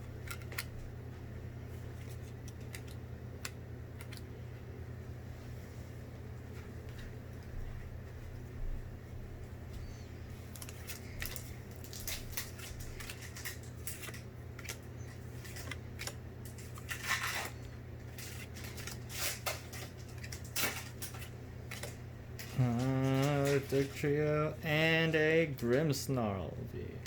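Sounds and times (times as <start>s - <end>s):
low steady hum: 0.0s - 27.0s
foil pack and cards rustling: 1.6s - 4.4s, 9.8s - 26.5s.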